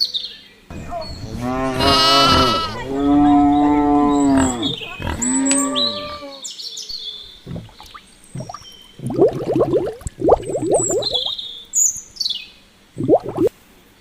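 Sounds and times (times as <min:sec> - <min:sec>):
cow mooing: 0:00.7 - 0:06.4
rapid pulsing animal call: 0:00.7 - 0:09.8
high bird chirps: 0:06.9 - 0:12.4.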